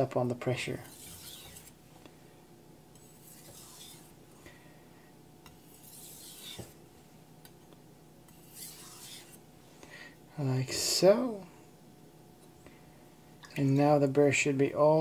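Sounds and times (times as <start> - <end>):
blade scraping on wet whetstone: 0.8 - 1.8, 3.0 - 4.2, 5.5 - 6.8, 8.3 - 9.4.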